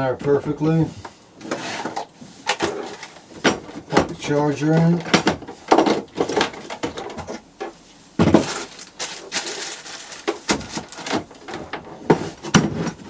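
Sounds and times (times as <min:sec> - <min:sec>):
hard plastic knocks and clatter: 0:01.5 - 0:08.8, 0:10.2 - 0:13.0.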